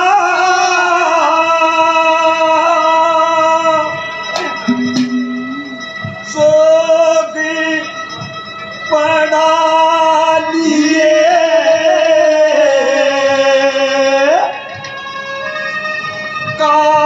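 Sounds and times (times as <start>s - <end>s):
melody of long held notes: 0.0s - 17.0s
light drum beat: 4.3s - 6.8s.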